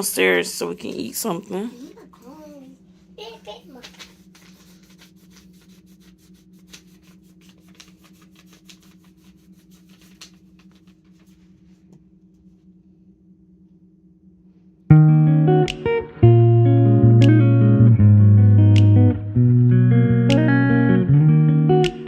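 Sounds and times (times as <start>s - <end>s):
faint low hum: 0.0s - 15.0s
plucked guitar music: 14.9s - 22.0s.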